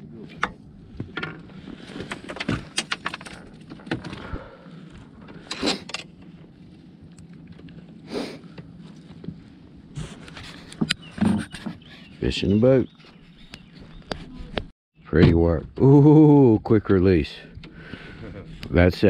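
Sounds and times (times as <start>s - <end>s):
sharp clicks and light knocks: 2.0s - 4.2s.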